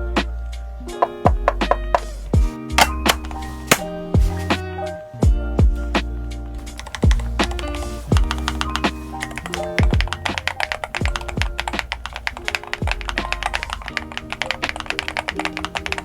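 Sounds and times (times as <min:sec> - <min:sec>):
background music: 0:00.0 - 0:16.0
keyboard typing clicks: 0:06.6 - 0:16.0.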